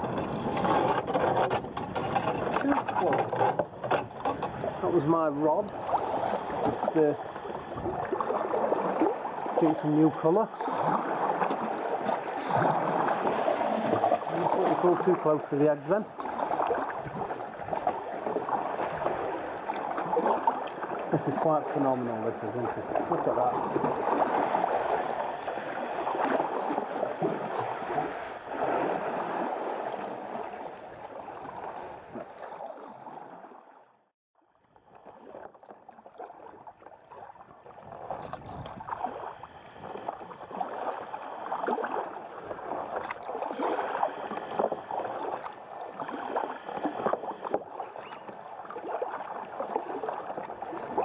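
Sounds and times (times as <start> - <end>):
water lapping around kayak: 0.0 - 51.0
small splashes: 4.1 - 33.8, 34.8 - 51.0.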